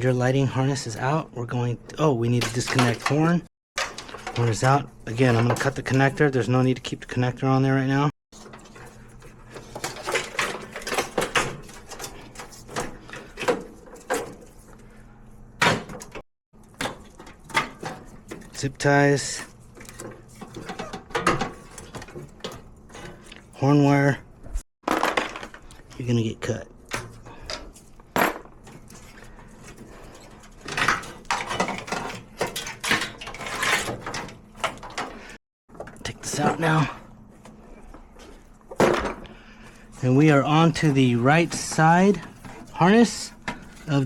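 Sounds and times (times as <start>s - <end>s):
wiring rustling and scraping: 0.0s - 7.3s, 8.3s - 44.0s.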